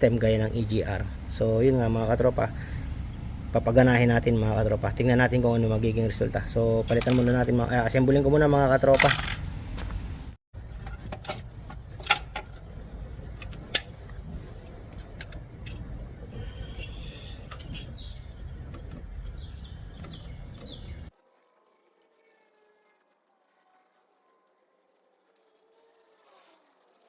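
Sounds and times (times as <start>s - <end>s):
low background rumble: 9.3s - 21.8s
birds chirping: 16.1s - 21.3s.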